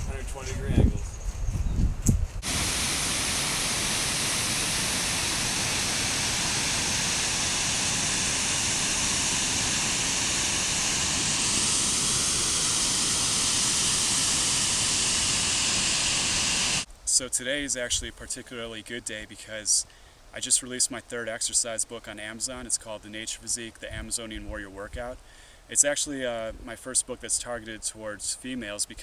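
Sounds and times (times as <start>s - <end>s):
waterfall rushing: 2.4s - 16.9s.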